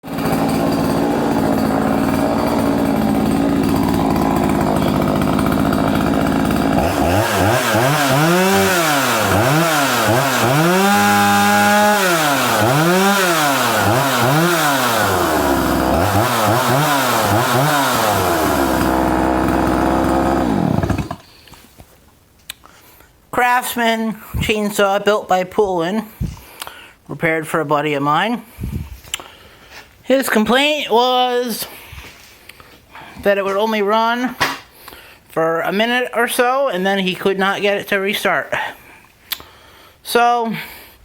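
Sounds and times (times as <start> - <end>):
chainsaw idling and revving: 0.0 - 21.3.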